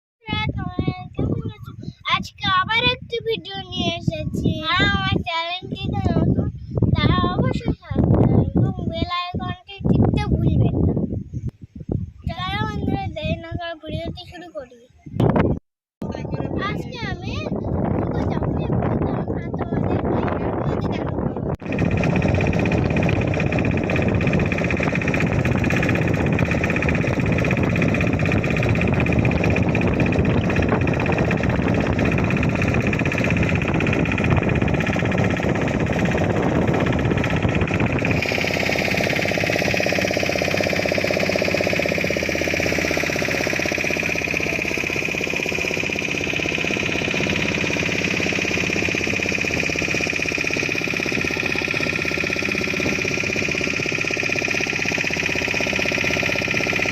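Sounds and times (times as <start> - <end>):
boat engine chugging: 0.2 - 11.4, 16.1 - 56.9
high whine: 21.6 - 56.9.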